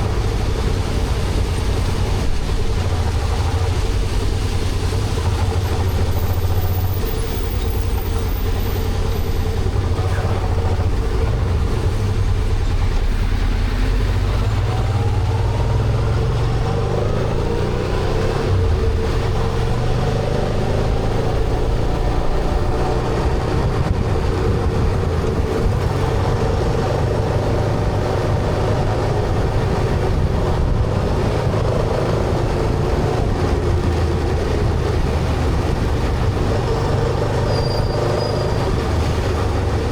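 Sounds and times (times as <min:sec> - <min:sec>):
wind and road noise: 0:00.0 - 0:39.9.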